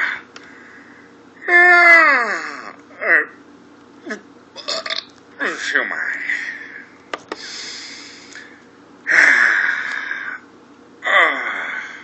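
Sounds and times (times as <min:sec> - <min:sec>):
man rasping breath: 0:06.2 - 0:08.5
man grunting: 0:11.0 - 0:11.9.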